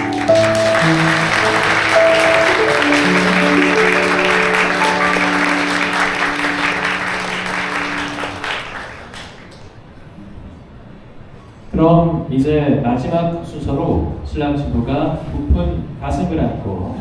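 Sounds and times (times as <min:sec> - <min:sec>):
slow instrumental music: 0:00.0 - 0:09.4
people applauding: 0:00.0 - 0:09.8.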